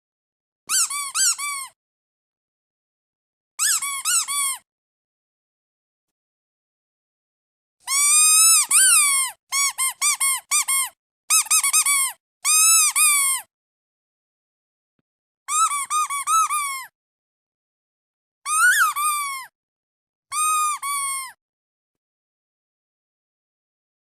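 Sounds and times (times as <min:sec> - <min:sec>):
squeaky duck toy squeaking: 0:00.7 - 0:01.8, 0:03.6 - 0:04.6, 0:07.8 - 0:13.5, 0:15.5 - 0:16.9, 0:18.5 - 0:19.5, 0:20.3 - 0:21.4.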